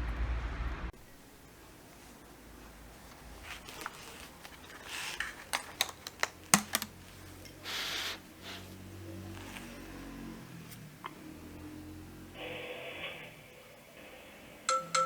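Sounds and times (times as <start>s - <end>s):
light clicks and taps: 3.1s - 7.6s.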